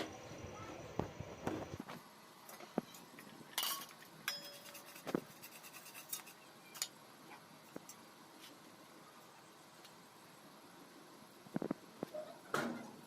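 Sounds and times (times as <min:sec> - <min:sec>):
dishes and cutlery clinking: 0:03.6 - 0:06.9.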